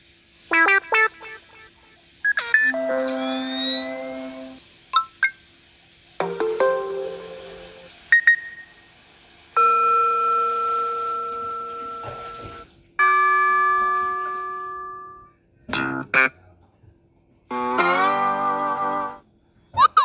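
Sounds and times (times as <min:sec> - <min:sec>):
quick electronic blips: 0:02.3 - 0:05.3
phone ringtone chime: 0:02.4 - 0:05.1
ringing chords: 0:02.4 - 0:05.1, 0:06.2 - 0:07.9.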